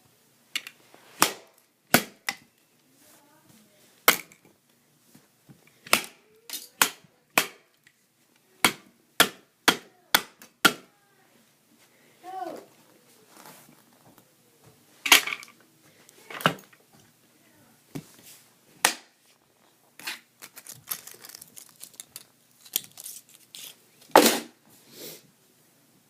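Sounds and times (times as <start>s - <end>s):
handling clicks and rustles: 19.4s - 23.8s.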